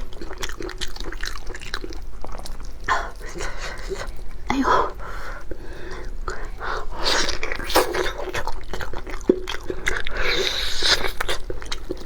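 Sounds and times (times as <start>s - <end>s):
wet chewing of food: 0.0s - 12.0s.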